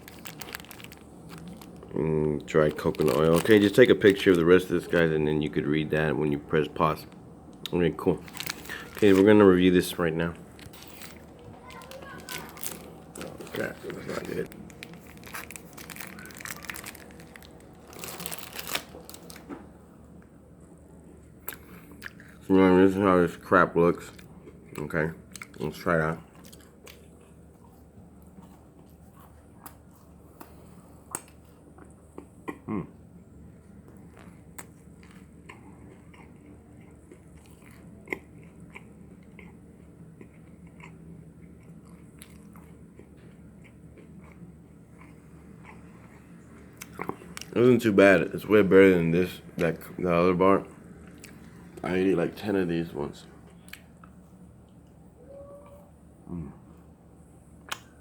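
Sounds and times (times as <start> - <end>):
person chewing granola bar: 0.0 - 4.4, 7.6 - 9.5, 10.3 - 19.5, 24.1 - 32.6, 33.8 - 47.6
wrapper crinkling and rustling: 0.0 - 5.0, 8.0 - 19.6.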